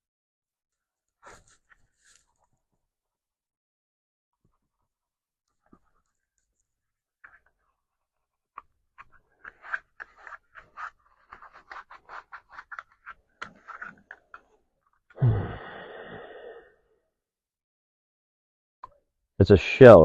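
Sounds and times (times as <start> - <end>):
cloth rubbing plastic sheath: 1.2 - 2.5, 5.5 - 15.0.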